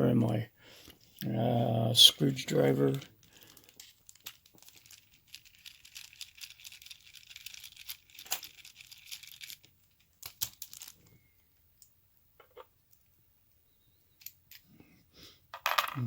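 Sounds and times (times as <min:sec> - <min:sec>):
plastic crinkling: 0:02.3 - 0:11.4.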